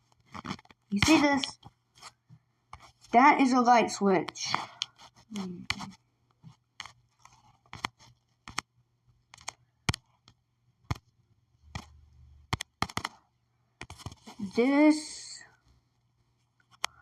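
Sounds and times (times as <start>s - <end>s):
faint handling noise: 4.4s - 10.4s
sharp clicks and taps: 6.8s - 8.7s, 9.3s - 11.1s, 11.7s - 13.2s.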